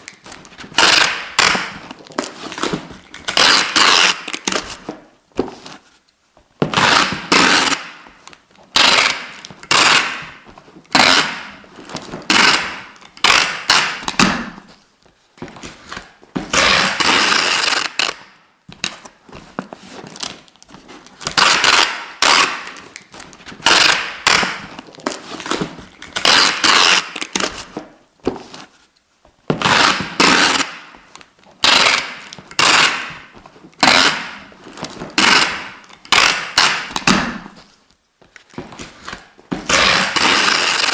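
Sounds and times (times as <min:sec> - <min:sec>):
adhesive tape ripping off roll: 0:00.6 - 0:04.8, 0:06.7 - 0:08.0, 0:08.8 - 0:11.6, 0:12.2 - 0:14.6, 0:16.0 - 0:18.3, 0:21.2 - 0:27.7, 0:29.6 - 0:30.9, 0:31.6 - 0:34.5, 0:35.1 - 0:37.6, 0:39.1 - 0:40.9.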